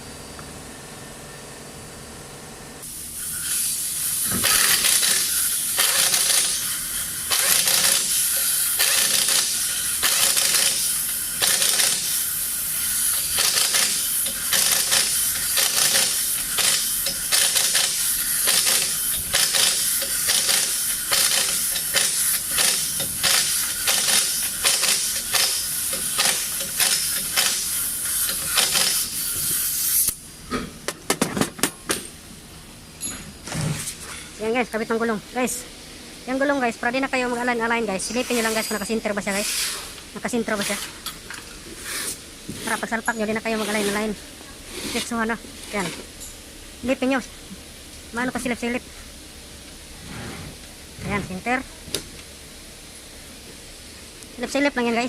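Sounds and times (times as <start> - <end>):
pneumatic impact wrench bursts: 2.8 - 30.2, 38.2 - 41.0
exhaust air hissing: 2.8 - 30.5.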